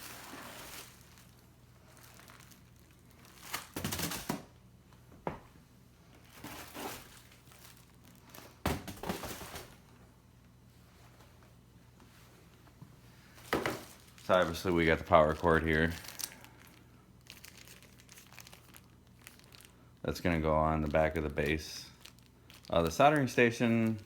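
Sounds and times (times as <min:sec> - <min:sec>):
packaging crinkling and rustling: 0:00.0 - 0:04.5, 0:06.1 - 0:09.9, 0:13.4 - 0:24.0.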